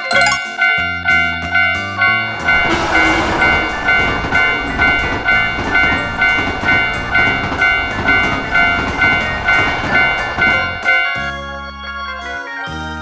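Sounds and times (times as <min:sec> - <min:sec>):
railroad crossing bell ringing: 0:00.2 - 0:11.4
passing train rumble: 0:02.2 - 0:11.1.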